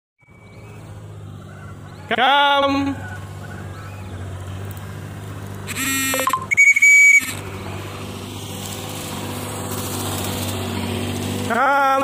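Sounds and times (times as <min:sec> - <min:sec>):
loud high whistle: 0:05.7 - 0:07.4
person calling: 0:05.7 - 0:07.4.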